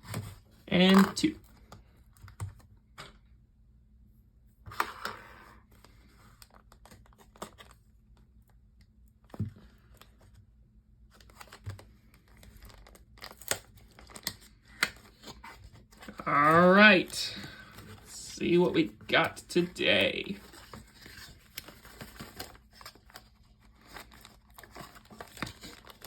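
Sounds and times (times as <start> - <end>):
packaging rustling and scraping: 11.1 - 16.6, 20.3 - 26.0.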